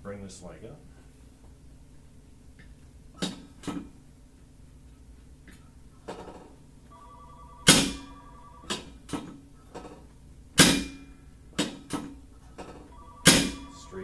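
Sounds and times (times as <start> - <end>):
faint high ring: 6.9 - 8.9, 12.8 - 14.0.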